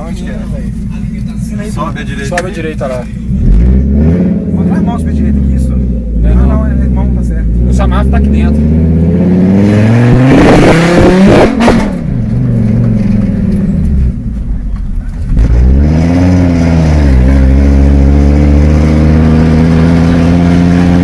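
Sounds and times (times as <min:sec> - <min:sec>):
car engine revving unsilenced: 0:02.0 - 0:14.3.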